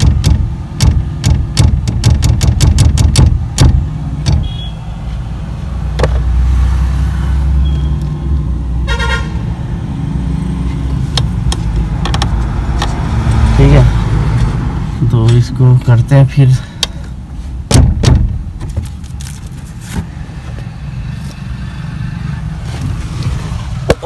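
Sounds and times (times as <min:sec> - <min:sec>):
sharp repeated knocks: 0:00.0 - 0:04.5, 0:17.7 - 0:18.4
car horn toot: 0:04.3 - 0:05.0, 0:08.8 - 0:09.4.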